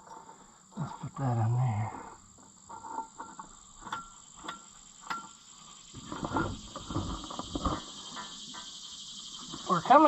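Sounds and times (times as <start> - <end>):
crickets chirring: 0.0 - 10.0
light metallic clinks: 2.4 - 9.6.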